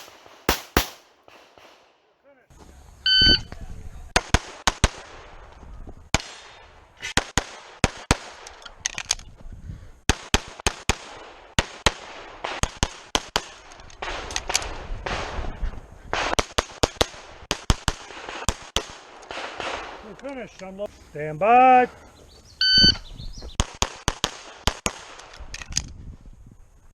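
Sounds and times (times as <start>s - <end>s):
pistol shots: 0.0s - 2.0s.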